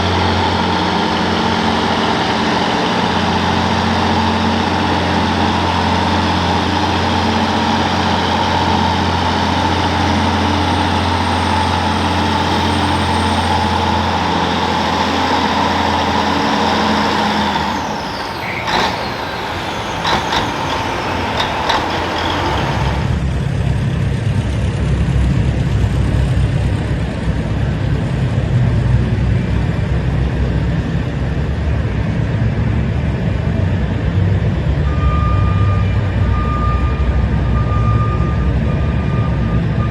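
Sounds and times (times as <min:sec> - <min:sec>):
engine knocks: 0:00.0 - 0:23.2
tractor diesel engine running hard: 0:00.0 - 0:39.9.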